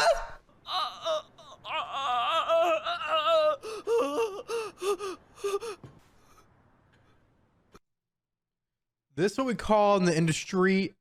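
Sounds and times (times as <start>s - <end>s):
man wailing and mock sobbing: 0.0s - 5.8s.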